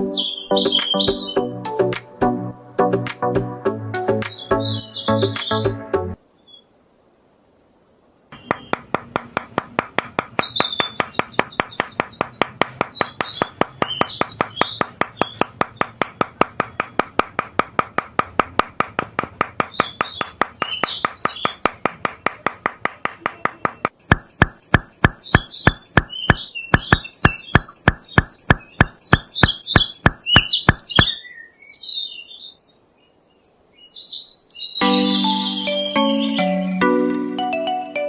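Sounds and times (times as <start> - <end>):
birds chirping: 0.0 - 3.1, 4.0 - 6.7, 8.3 - 38.0
sharp knocking: 8.4 - 31.1.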